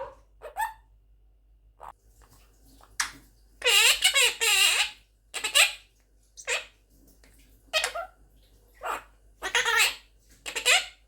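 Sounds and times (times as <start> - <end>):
parrot calls: 0.0 - 0.9, 3.6 - 6.7, 7.7 - 8.1, 8.8 - 11.0.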